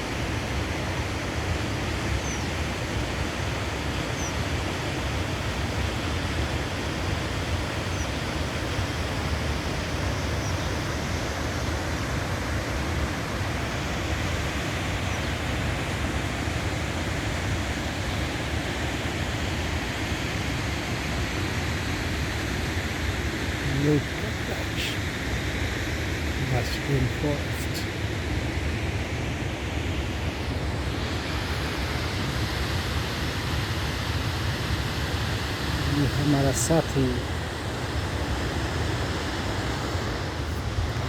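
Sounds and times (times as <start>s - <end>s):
waterfall roaring: 11.4s - 41.0s.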